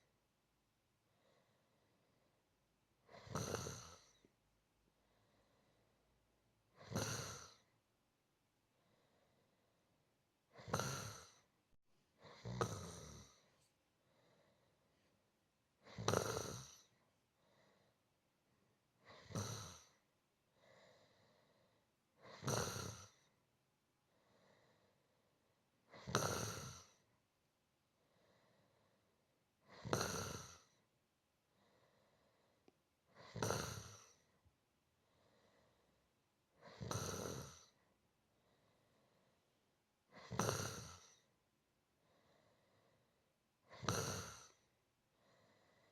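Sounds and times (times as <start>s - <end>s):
faint breaths: 1.0s - 2.5s, 3.1s - 6.2s, 8.7s - 10.0s, 10.7s - 15.4s, 16.0s - 18.2s, 18.8s - 23.4s, 24.0s - 25.6s, 27.9s - 45.9s
person snoring softly: 3.0s - 4.4s, 6.7s - 7.8s, 10.5s - 11.6s, 12.2s - 15.1s, 15.8s - 18.0s, 19.0s - 23.4s, 24.1s - 27.1s, 28.0s - 30.9s, 31.5s - 39.5s, 40.1s - 41.4s, 42.0s - 45.9s.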